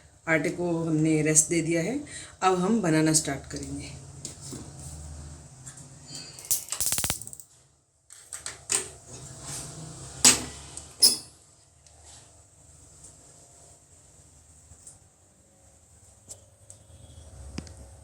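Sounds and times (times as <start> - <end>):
utensils knocking and clicking: 6.5 - 7.4.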